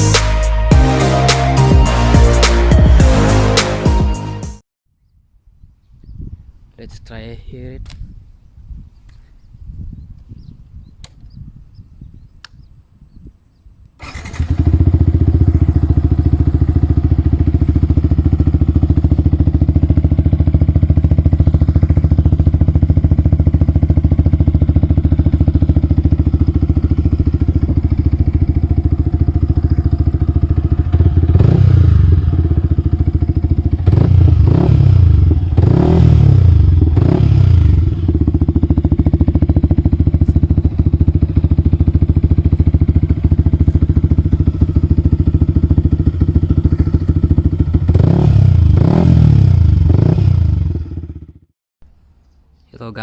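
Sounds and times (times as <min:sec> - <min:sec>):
motorcycle engine idling and revving: 0:14.0 - 0:52.0.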